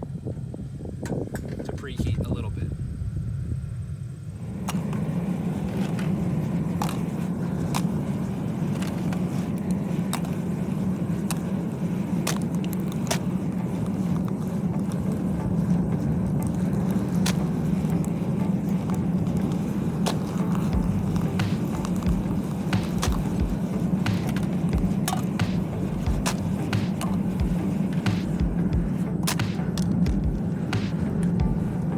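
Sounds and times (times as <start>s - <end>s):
gas burner rushing and humming: 0.0s - 31.9s
sharp clicks: 20.1s - 31.6s.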